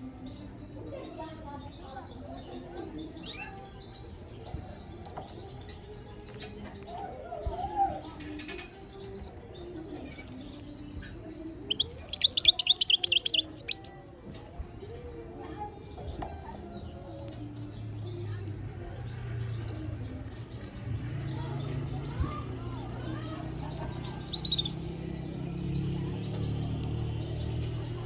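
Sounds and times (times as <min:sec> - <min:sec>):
goldfinch twittering and chirping: 0:08.8 - 0:14.0, 0:21.6 - 0:28.0.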